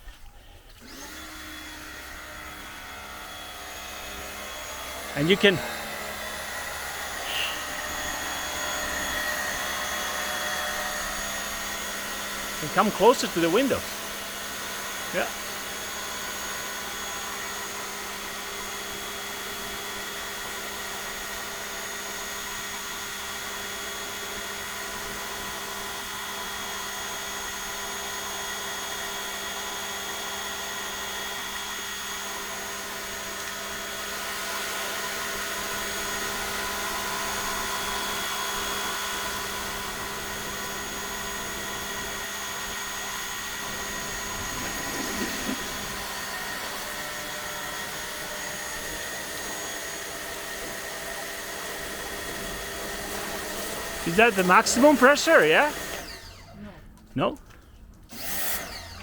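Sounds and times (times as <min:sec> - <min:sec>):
pressure washer motor humming: 0:00.8 - 0:23.2, 0:33.2 - 0:56.4, 0:58.1 - 0:59.0.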